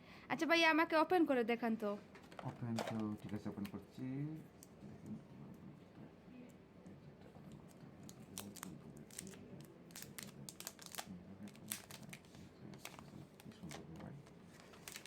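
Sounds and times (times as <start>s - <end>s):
plastic wrap crinkling and tearing: 8.0s - 15.0s
small sharp crackles: 8.0s - 15.0s.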